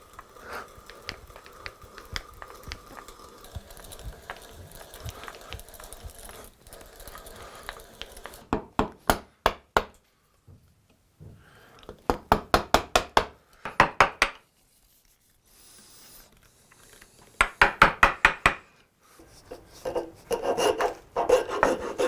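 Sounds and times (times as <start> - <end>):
mallet tapping on wood: 8.5 - 10.0, 12.1 - 14.4, 17.4 - 18.6.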